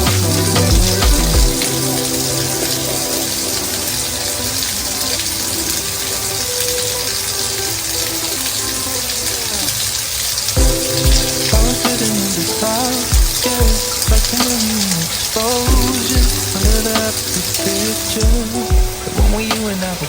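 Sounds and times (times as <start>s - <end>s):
bass beat: 0.0s - 3.0s, 10.6s - 12.2s, 13.1s - 14.5s, 15.7s - 17.2s, 18.2s - 19.5s
background music: 0.0s - 20.0s
tap water running: 0.0s - 20.0s.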